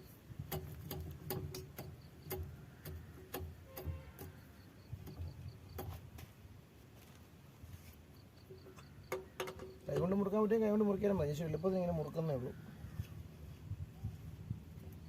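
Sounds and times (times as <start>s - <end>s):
wheel spanner metallic clicks: 0.4s - 6.0s.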